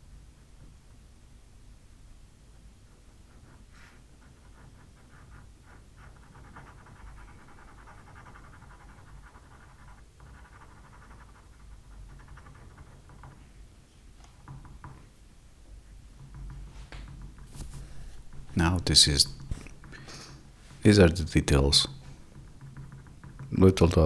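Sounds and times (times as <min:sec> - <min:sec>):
pencil scratching on paper: 0:02.9 - 0:13.5, 0:16.3 - 0:24.0.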